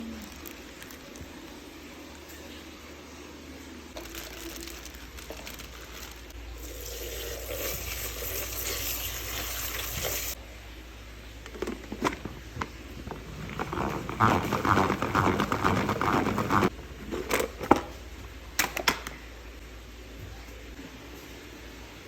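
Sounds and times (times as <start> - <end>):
tap water running: 6.6 - 10.4.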